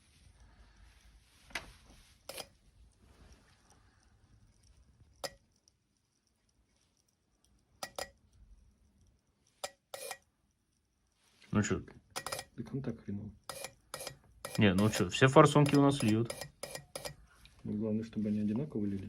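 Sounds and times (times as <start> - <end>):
faint background noise: 0.0 - 19.0
fuel injectors clicking: 13.4 - 17.6.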